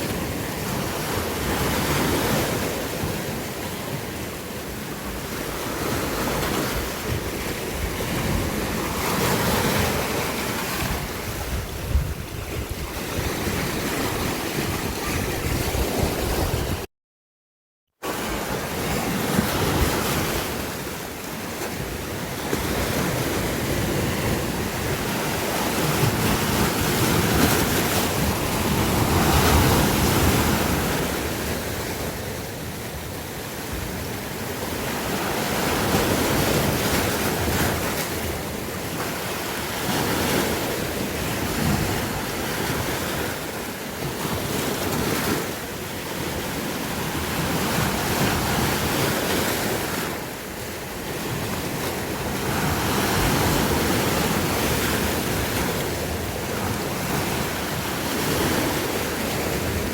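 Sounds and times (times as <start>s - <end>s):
ocean waves breaking on shore: 0.0s - 16.9s, 18.0s - 59.9s
wind on microphone: 5.4s - 16.9s.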